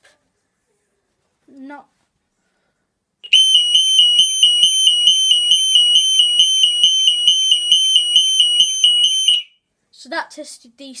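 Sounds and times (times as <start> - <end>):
burglar alarm warbling siren: 3.3 - 9.5.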